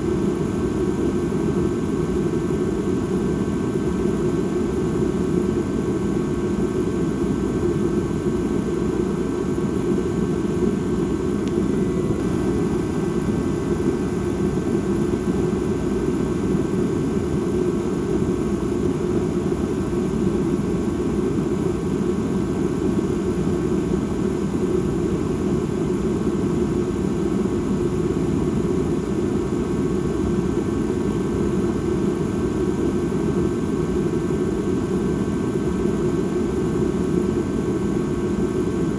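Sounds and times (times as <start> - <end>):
faint high held tones: 11.4 - 14.6.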